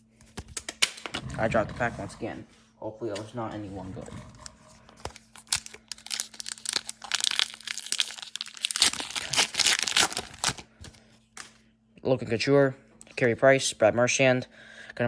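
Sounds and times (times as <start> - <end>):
faint steady hum: 0.0 - 15.0
foil wrapper crinkling and tearing: 5.0 - 11.0.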